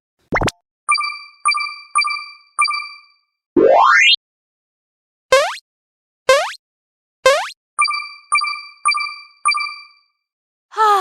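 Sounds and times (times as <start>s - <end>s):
cartoon rising bloops: 3.6s - 4.2s, 5.3s - 5.6s, 6.3s - 6.6s, 7.3s - 7.6s.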